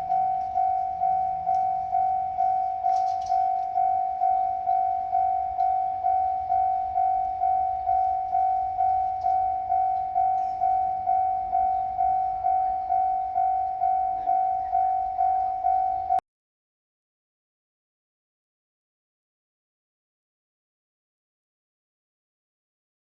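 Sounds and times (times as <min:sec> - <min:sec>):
level crossing bell dinging: 0:00.0 - 0:16.2.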